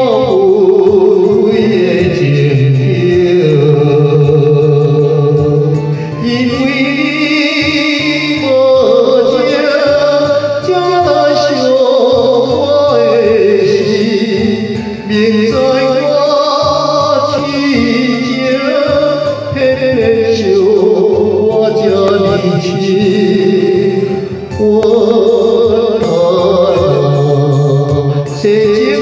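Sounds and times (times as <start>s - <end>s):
backing track with bass line: 0.0s - 29.0s
person singing with vibrato: 0.0s - 29.0s.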